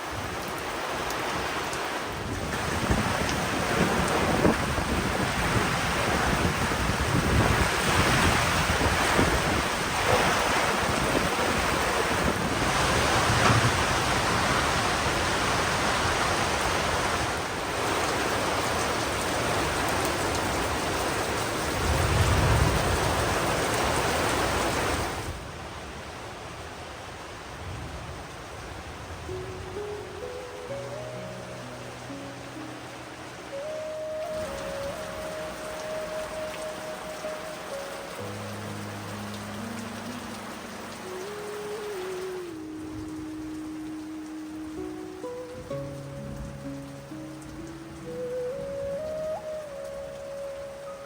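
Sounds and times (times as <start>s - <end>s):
heavy rain pouring: 0.0s - 51.0s
thunder rumbling: 2.4s - 17.1s, 18.6s - 25.2s.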